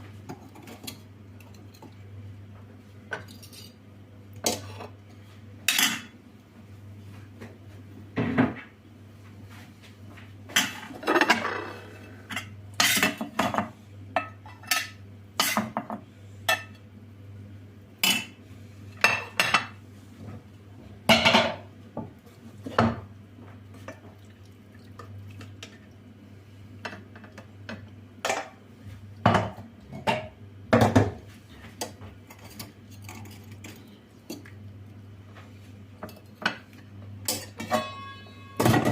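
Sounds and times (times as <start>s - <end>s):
dishes and cutlery clinking: 36.0s - 38.9s.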